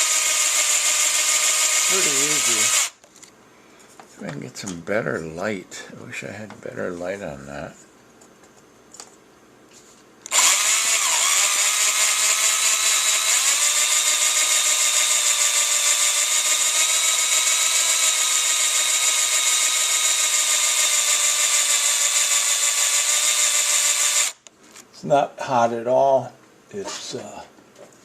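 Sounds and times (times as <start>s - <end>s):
cordless drill motor whine: 0.0s - 3.0s, 10.3s - 24.4s
hole saw grinding into brass: 0.0s - 3.0s, 10.3s - 24.4s.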